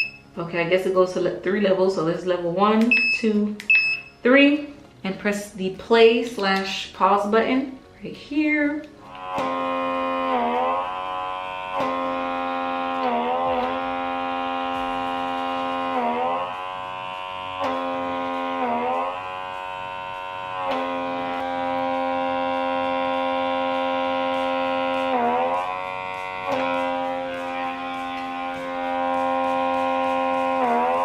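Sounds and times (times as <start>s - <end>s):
suction pump buzzing whine: 0.0s - 31.0s.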